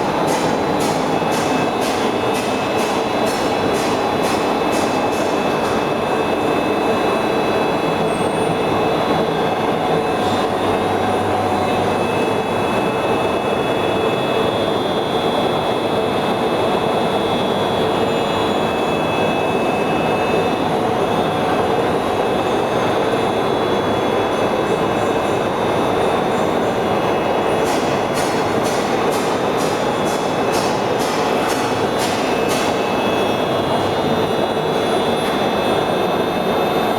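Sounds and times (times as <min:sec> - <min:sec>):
metal lathe hum and whine: 0:05.8 - 0:27.6.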